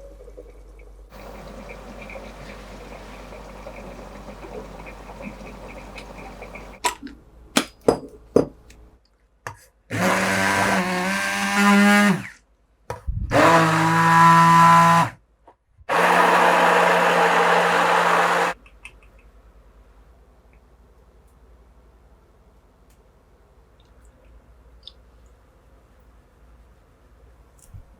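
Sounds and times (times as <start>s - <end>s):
stick blender motor: 9.9s - 12.4s, 13.3s - 15.2s, 15.9s - 18.6s.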